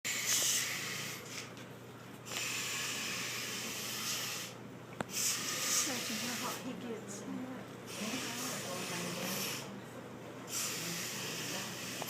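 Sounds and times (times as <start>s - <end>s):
hot iron hissing in water: 0.1s - 1.4s, 2.3s - 6.6s.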